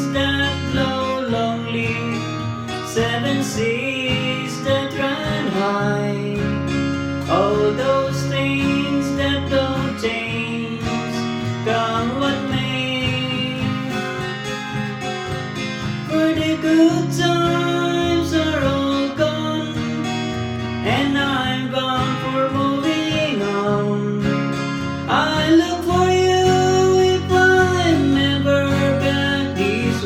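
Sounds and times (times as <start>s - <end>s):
acoustic guitar strumming chords: 0.0s - 30.0s.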